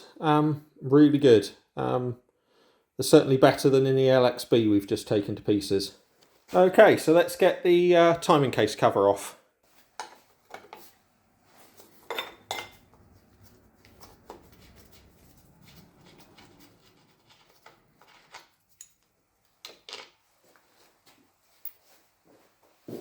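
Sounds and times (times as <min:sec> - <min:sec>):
metal tools clinking: 0:12.0 - 0:12.9, 0:16.0 - 0:20.2
faint scraping: 0:12.7 - 0:18.7.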